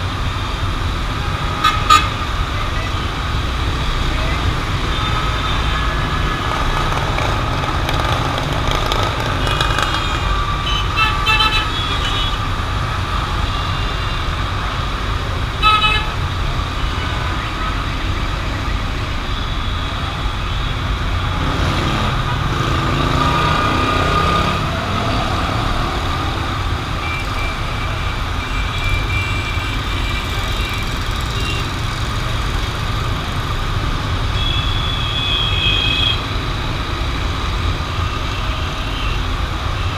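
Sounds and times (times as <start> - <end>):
city traffic rumble: 0.0 - 39.9
loud car horn honk: 1.6 - 2.2, 34.4 - 36.2.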